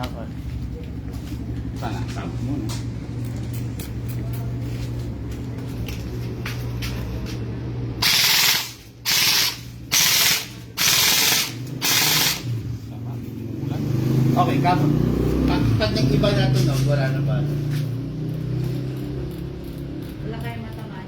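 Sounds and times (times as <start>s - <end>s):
airsoft gun bursts: 8.0s - 12.5s.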